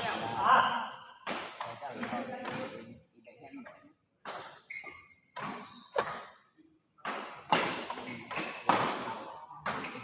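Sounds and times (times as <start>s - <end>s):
badminton racket hitting shuttlecock: 4.2s - 10.0s.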